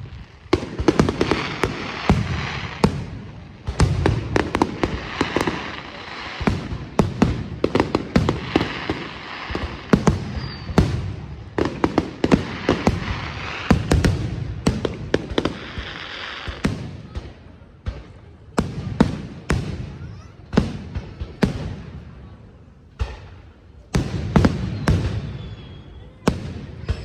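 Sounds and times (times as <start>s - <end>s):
firework crackling: 0.0s - 17.2s
firework bangs: 0.0s - 27.0s.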